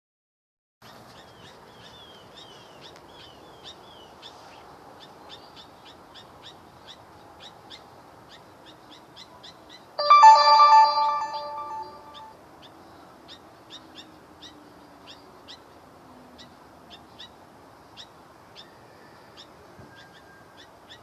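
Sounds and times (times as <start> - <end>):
loud ringing tone: 10.0 - 12.3.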